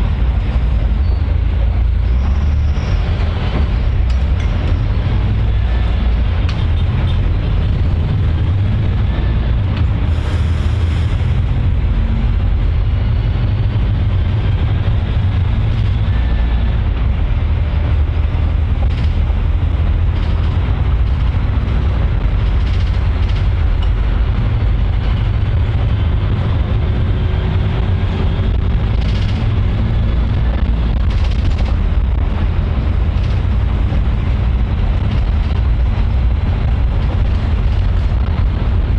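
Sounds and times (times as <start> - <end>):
transport vehicle rumbling: 0.0 - 38.9
faint clicks and rattles: 17.8 - 38.9.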